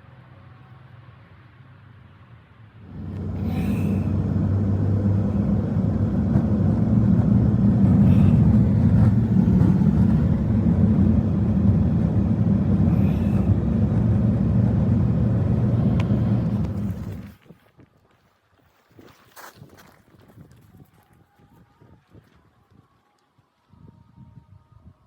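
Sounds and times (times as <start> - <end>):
low engine drone: 2.8 - 17.4.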